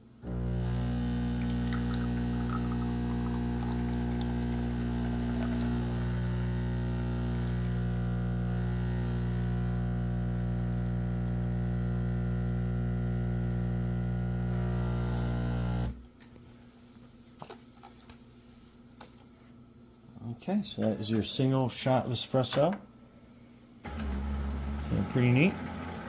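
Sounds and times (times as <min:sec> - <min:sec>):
espresso machine pump humming: 0:00.2 - 0:16.0.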